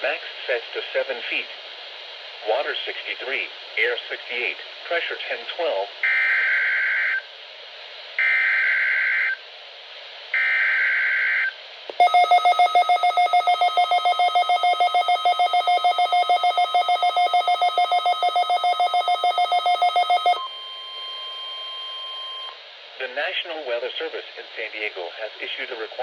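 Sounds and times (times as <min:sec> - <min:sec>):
digital data tone bursts: 0:10.4 - 0:22.6
rapid alarm beeps: 0:10.4 - 0:22.6.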